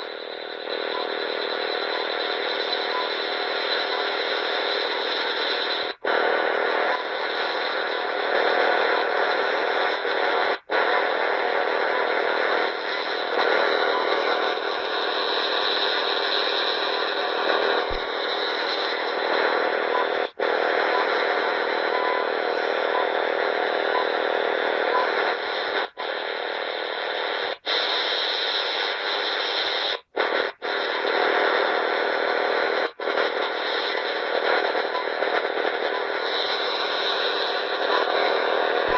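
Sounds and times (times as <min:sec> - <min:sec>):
radio interference noise: 0:00.0 - 0:38.9.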